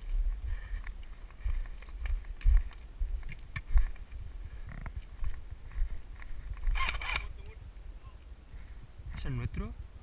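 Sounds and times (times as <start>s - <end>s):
wind on microphone: 0.0s - 10.0s
rustling and clicks: 0.8s - 7.4s.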